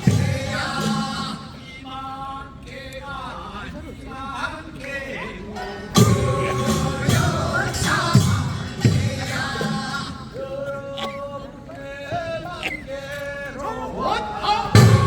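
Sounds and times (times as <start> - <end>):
loud percussion strokes: 0.0 - 1.6, 5.6 - 10.5, 14.7 - 15.0
group singing held notes: 0.0 - 15.0.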